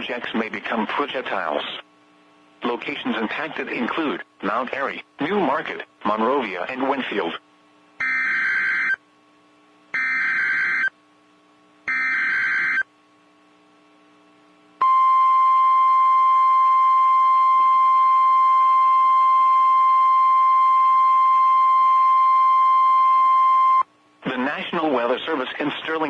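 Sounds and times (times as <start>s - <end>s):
warbling digital data tones: 11.9s - 12.8s.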